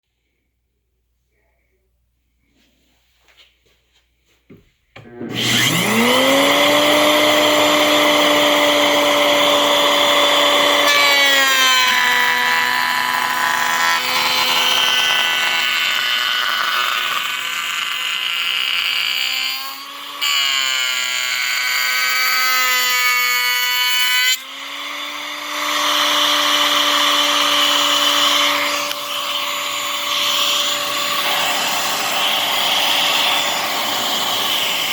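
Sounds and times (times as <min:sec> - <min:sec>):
router bit cutting wood: 0:05.0 - 0:34.9
router high whine: 0:05.0 - 0:34.9.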